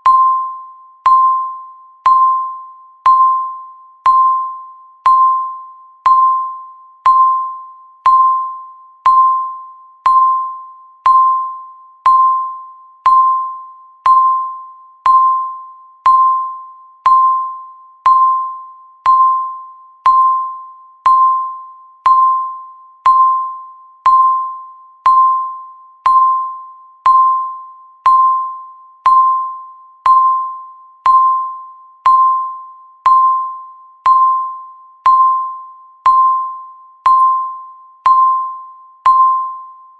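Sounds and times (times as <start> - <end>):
countdown timer beeping: 0.0 - 39.8.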